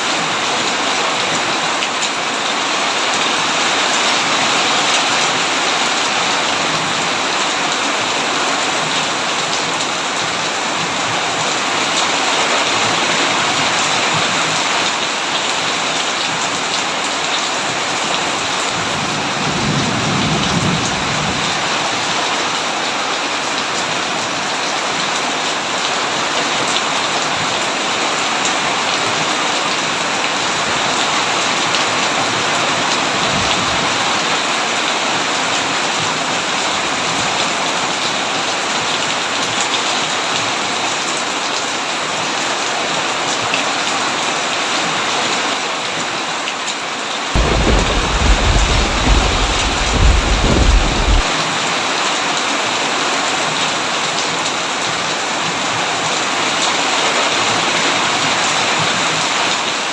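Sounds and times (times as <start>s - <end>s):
heavy rain: 0.0s - 59.9s
thunder rumble: 47.4s - 51.3s.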